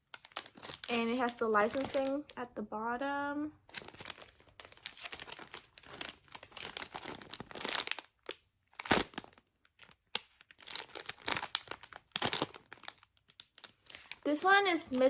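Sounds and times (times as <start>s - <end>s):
plastic bag crinkling: 0.0s - 2.5s, 3.6s - 15.0s.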